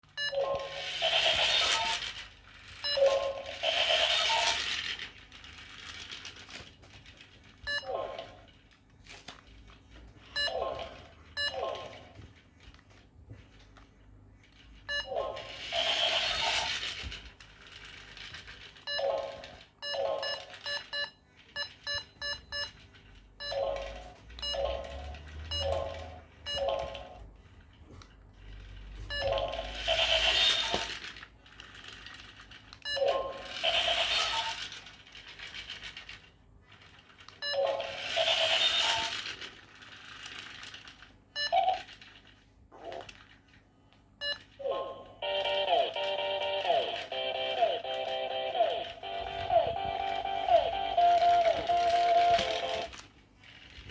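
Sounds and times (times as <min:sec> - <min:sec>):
toy robot electronic tones and beeps: 0:00.2 - 0:04.8, 0:10.3 - 0:12.1, 0:14.9 - 0:16.9, 0:18.8 - 0:22.8, 0:23.4 - 0:27.2, 0:29.1 - 0:31.0, 0:32.8 - 0:34.7, 0:37.4 - 0:39.2, 0:45.2 - 0:52.9.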